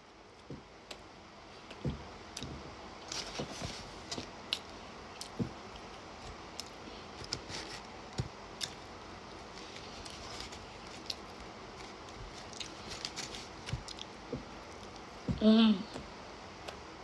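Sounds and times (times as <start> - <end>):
soft low thuds: 15.2 - 16.1.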